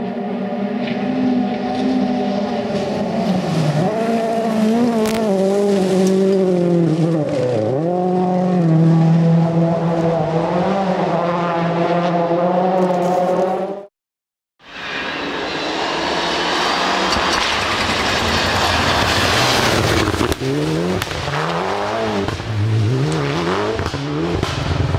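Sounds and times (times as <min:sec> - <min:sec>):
rally car engine running hard: 0:00.0 - 0:13.8.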